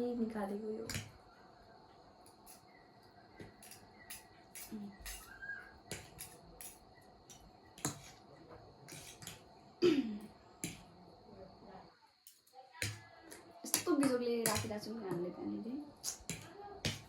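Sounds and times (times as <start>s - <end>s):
dishes and utensils clicking: 3.4s - 8.2s.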